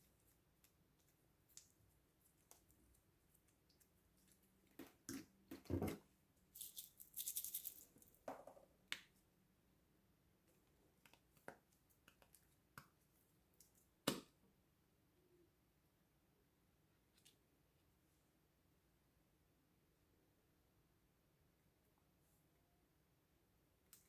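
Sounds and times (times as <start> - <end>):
rattling crinkle: 6.6 - 8.2.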